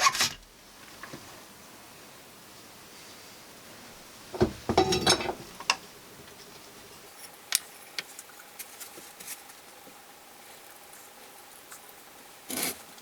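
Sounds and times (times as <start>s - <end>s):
hard objects knocking and clattering: 4.3s - 5.8s.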